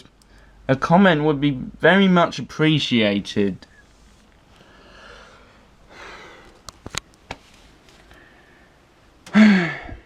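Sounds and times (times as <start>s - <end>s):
soft breaths: 3.6s - 10.0s.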